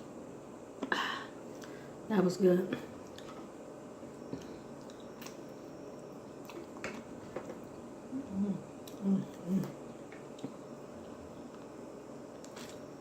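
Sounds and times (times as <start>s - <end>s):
person chewing: 4.2s - 7.6s, 10.2s - 12.9s.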